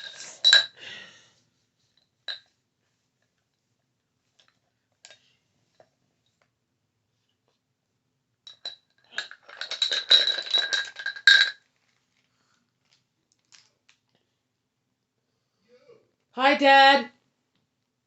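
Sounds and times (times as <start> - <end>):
brushes clinking against container: 0.0 - 0.8, 8.5 - 11.6.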